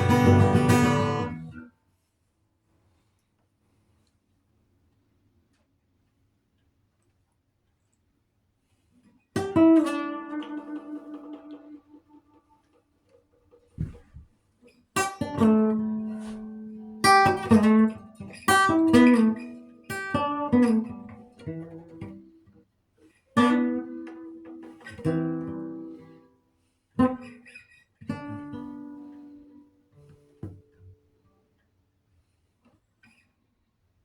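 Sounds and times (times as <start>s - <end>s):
acoustic guitar chords: 0.0s - 1.6s.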